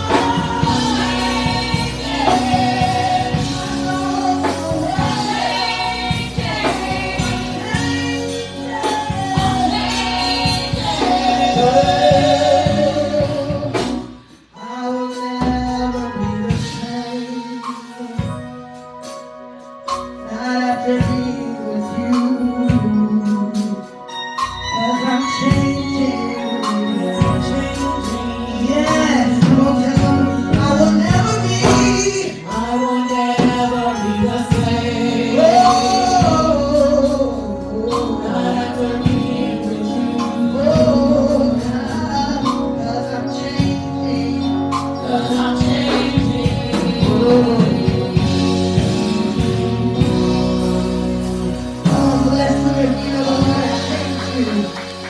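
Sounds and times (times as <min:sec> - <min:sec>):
voices singing held notes: 0:00.0 - 0:14.2, 0:25.9 - 0:55.0
band accompaniment: 0:00.0 - 0:55.0.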